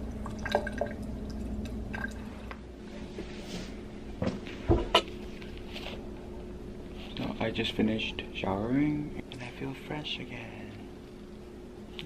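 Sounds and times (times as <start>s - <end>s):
water dripping: 0.0s - 2.3s
steady low hum: 0.0s - 12.0s.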